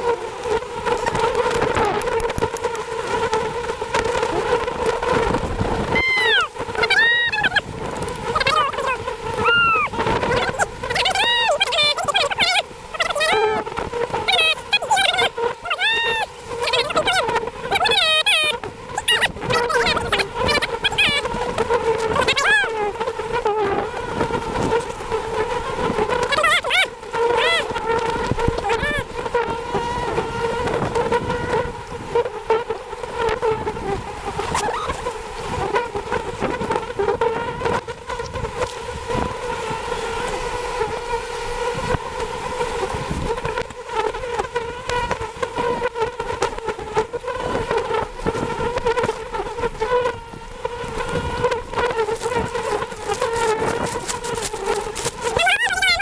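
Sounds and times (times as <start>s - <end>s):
bees buzzing: 0.0s - 56.0s.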